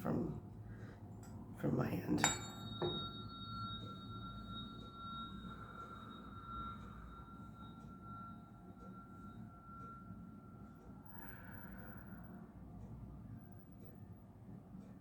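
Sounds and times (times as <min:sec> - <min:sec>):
tuning fork ringing: 0:01.2 - 0:13.9
faint higher overtone: 0:01.6 - 0:12.6.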